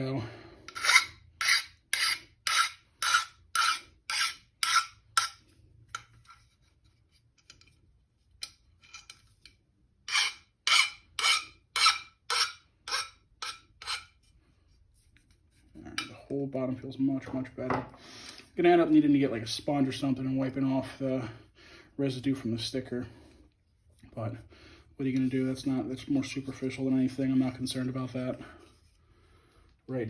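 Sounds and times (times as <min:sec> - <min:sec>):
abrasive rasping on metal edge: 0:00.7 - 0:05.4, 0:10.1 - 0:14.2.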